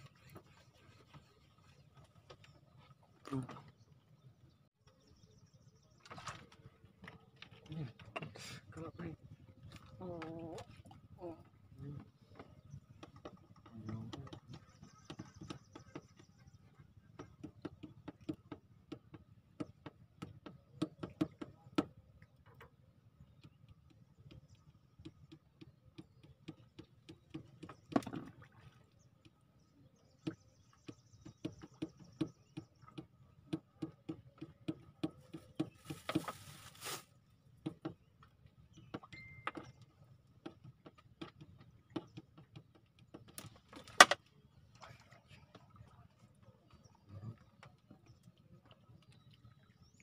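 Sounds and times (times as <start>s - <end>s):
rustling: 35.9s - 37.1s.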